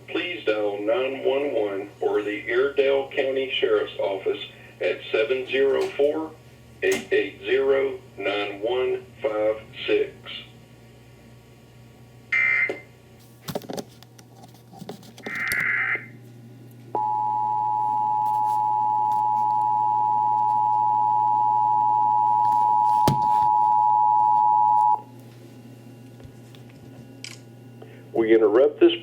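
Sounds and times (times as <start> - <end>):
two-tone attention signal: 17.0 - 25.0.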